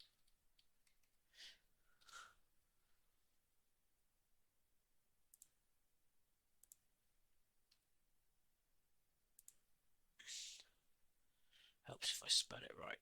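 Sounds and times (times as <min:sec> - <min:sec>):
computer mouse clicks: 0:05.3 - 0:05.6, 0:06.6 - 0:06.9, 0:09.4 - 0:09.6.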